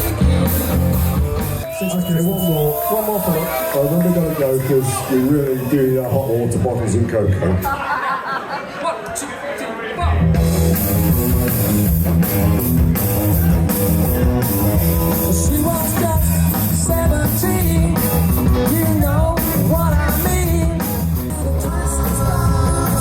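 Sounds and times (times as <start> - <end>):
steady drum beat: 0.0 - 2.0, 10.2 - 23.0
live rock band playing: 0.0 - 6.9, 10.1 - 23.0.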